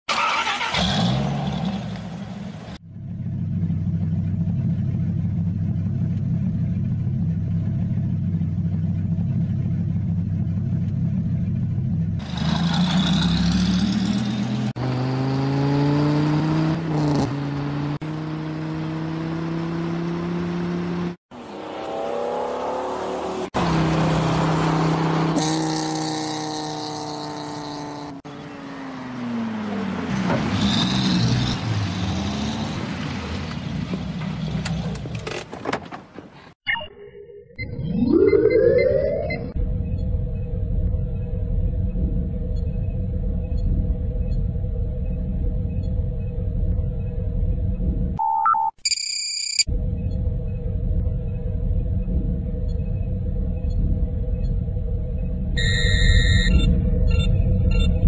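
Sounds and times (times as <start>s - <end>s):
car engine revving: 3.0s - 35.0s.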